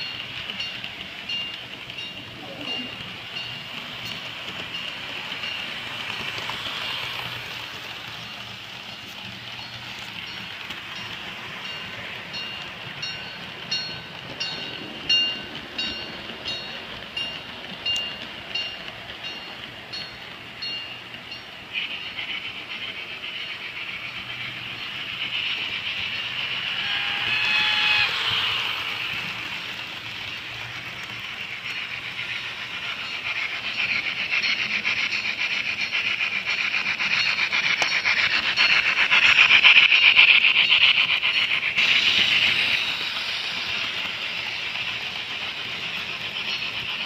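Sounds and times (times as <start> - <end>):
ringing clicks of train wheels: 0.0 - 47.0
steady hiss: 17.4 - 47.0.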